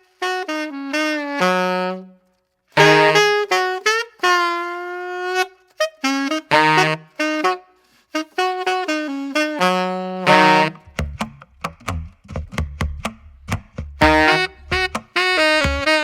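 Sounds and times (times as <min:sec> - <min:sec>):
background music melody: 0:10.3 - 0:16.0
drum and bass beat: 0:10.3 - 0:16.0.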